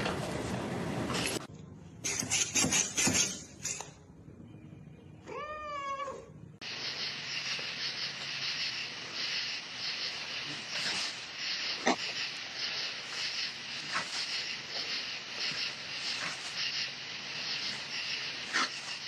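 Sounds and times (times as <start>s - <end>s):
cat meowing: 5.2s - 6.4s.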